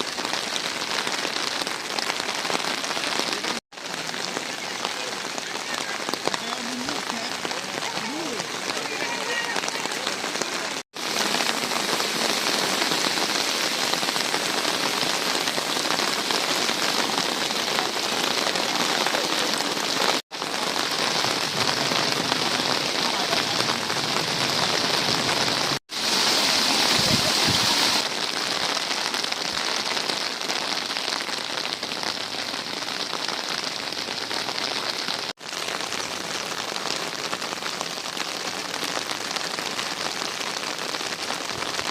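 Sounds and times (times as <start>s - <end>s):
water rushing: 2.1s - 30.9s.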